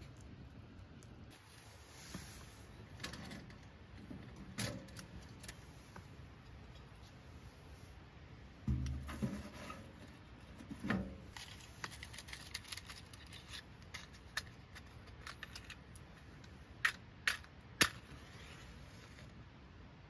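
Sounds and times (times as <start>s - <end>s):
small objects clicking and tapping: 11.3s - 18.1s.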